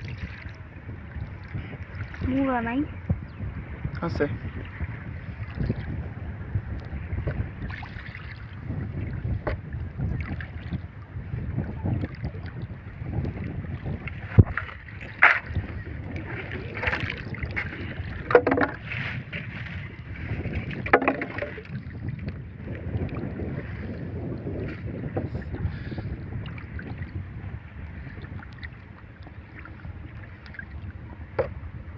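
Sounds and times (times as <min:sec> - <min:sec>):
water noise around boat: 0:00.0 - 0:31.9
wind: 0:00.0 - 0:31.9
sharp knocks against boat: 0:09.4 - 0:09.6, 0:14.3 - 0:15.6, 0:18.3 - 0:19.7, 0:20.6 - 0:21.7, 0:31.3 - 0:31.6.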